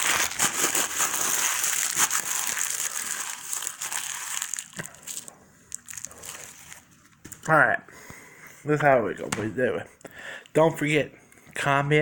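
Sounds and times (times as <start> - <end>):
paper rustling: 0.0 - 5.3
paper wrapper crumpling: 0.0 - 7.0.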